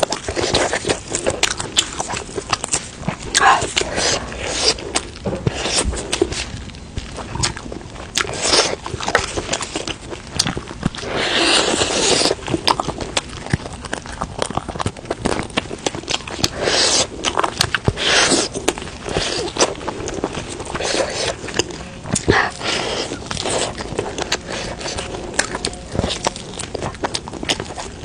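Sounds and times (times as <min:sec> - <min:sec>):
chewing with wet mouth clicks: 0:00.0 - 0:28.0
noisy chewing bursts: 0:00.0 - 0:28.0.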